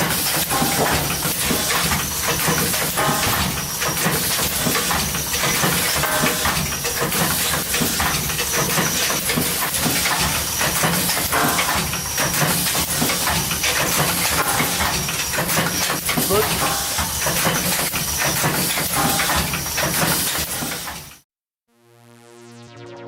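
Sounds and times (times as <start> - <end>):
machinery hiss: 0.0 - 21.2
low hum: 21.8 - 23.0.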